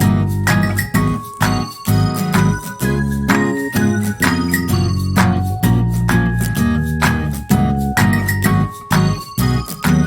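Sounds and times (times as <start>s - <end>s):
upbeat instrumental music: 0.0s - 10.0s.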